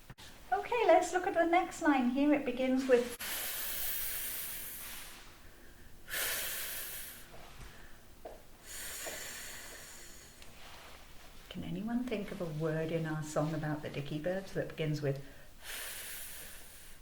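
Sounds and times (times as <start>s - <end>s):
woman making hissing f sound: 3.2s - 5.3s, 6.1s - 7.3s, 8.6s - 10.4s, 15.6s - 17.0s.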